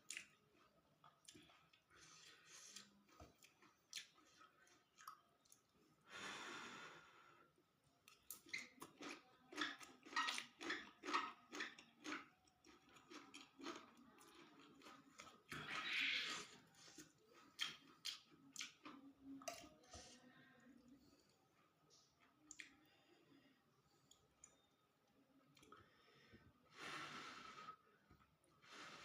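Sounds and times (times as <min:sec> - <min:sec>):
person chewing food: 0:00.0 - 0:06.0, 0:08.0 - 0:19.8, 0:21.5 - 0:23.1.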